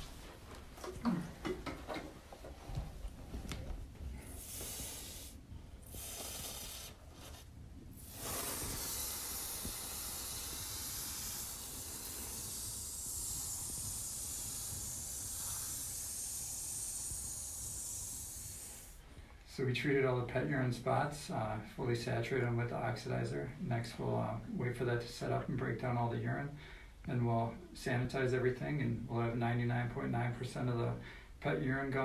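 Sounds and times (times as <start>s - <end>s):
liquid spray hissing: 4.3s - 7.3s, 7.9s - 19.0s.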